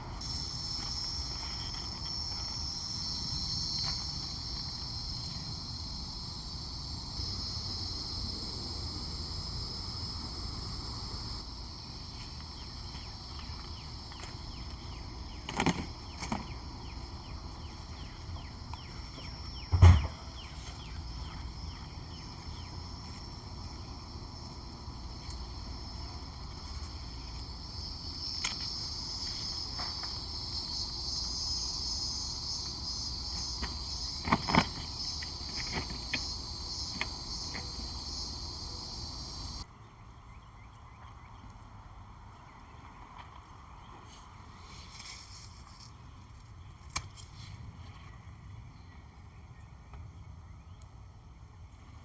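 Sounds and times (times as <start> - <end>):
high-pitched insect drone: 0.0 - 39.6
loud thump: 19.7 - 20.2.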